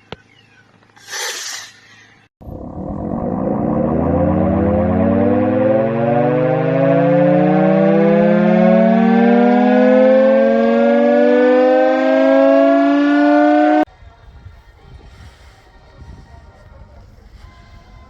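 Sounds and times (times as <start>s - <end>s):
air raid siren winding up: 2.4s - 13.9s.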